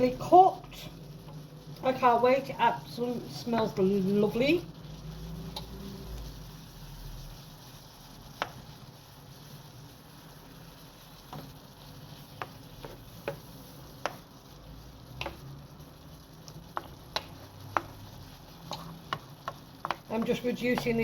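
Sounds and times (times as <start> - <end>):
chicken sizzling in a frying pan: 0.0 - 21.0.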